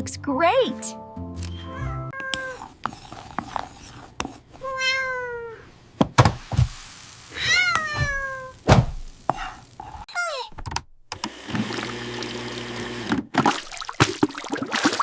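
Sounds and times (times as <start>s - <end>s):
cat meowing: 1.6s - 2.6s, 4.6s - 5.7s, 7.3s - 8.6s.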